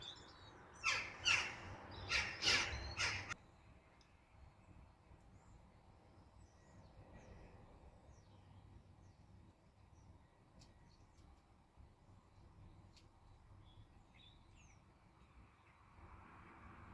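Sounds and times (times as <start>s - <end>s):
small birds chirping: 0.0s - 7.4s, 12.1s - 15.8s
crow cawing: 0.8s - 3.4s.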